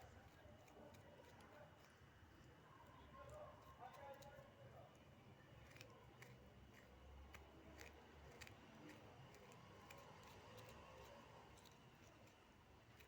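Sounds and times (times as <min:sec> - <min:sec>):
knife cutting food on a board: 0:05.6 - 0:13.0.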